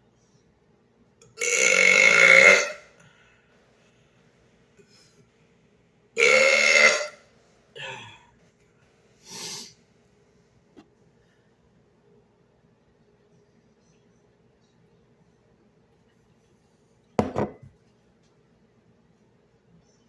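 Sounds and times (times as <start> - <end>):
man burping loudly: 1.4 - 2.8, 6.2 - 7.2.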